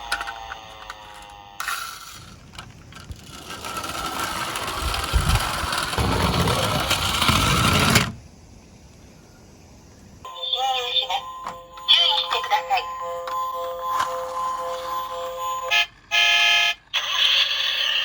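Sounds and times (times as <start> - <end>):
toy cars whirring on plastic track: 0.0 - 8.2, 13.7 - 18.0.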